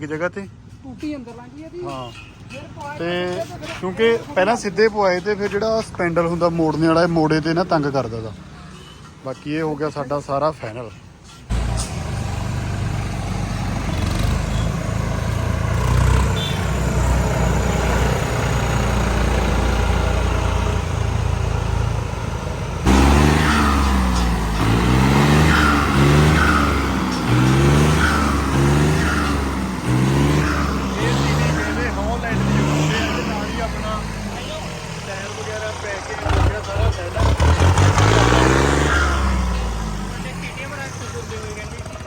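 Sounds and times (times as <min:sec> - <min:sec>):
vehicle engine revving: 0:11.5 - 0:42.0.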